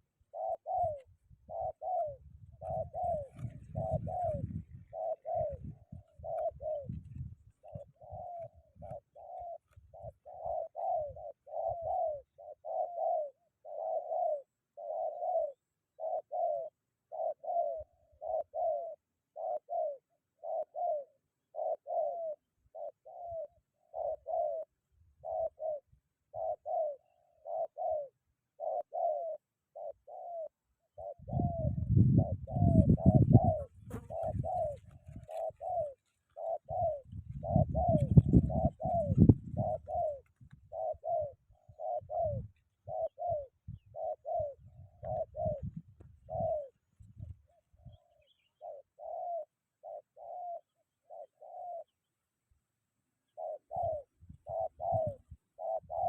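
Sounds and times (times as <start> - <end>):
dove cooing: 0.0 - 52.1, 53.2 - 56.0
wind buffeting microphone: 1.3 - 9.0, 31.2 - 35.8, 36.7 - 40.9, 43.7 - 48.0.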